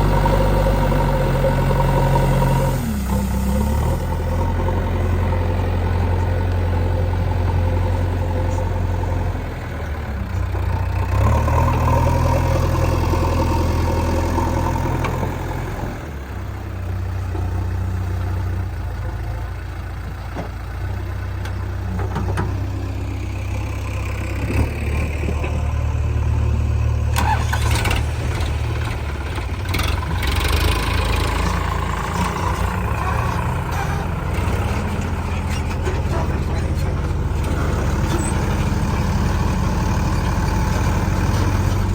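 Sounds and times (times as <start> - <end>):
diesel engines running: 0.0 - 41.9.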